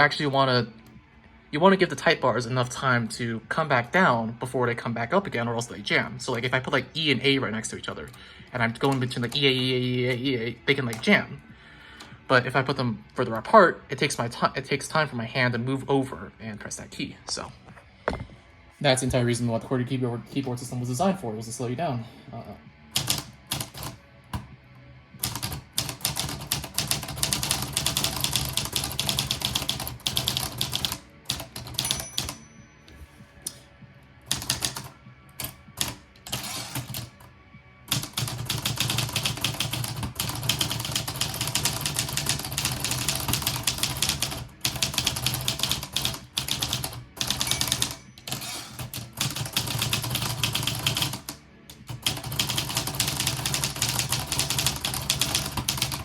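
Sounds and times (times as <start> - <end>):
typewriter keys striking: 25.2 - 32.4, 37.9 - 51.2, 51.8 - 56.0
typewriter bell ring: 31.6 - 32.7, 47.2 - 48.6.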